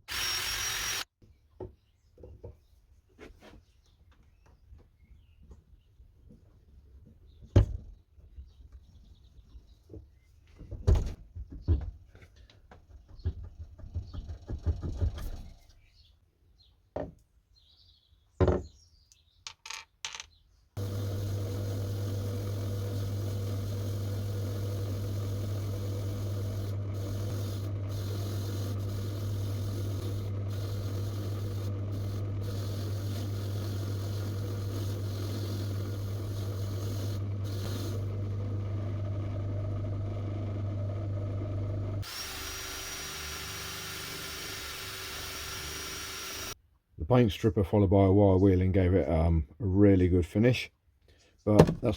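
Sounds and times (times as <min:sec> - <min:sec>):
powered wire wheel humming: 0:20.8 - 0:46.6.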